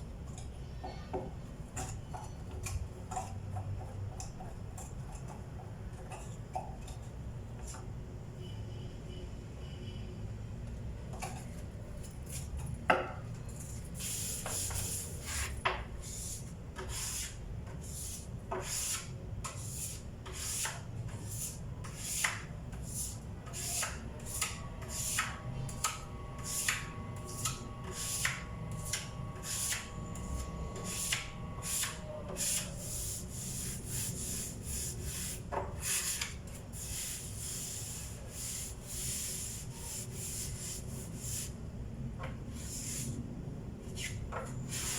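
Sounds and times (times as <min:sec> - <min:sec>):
sandpaper rubbing on wood: 0:31.7 - 0:41.5.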